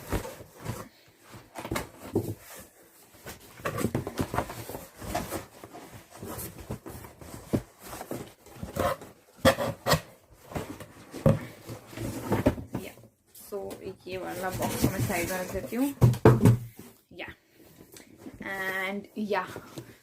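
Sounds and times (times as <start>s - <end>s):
box scraping and rustling: 0.0s - 13.0s, 14.1s - 16.0s.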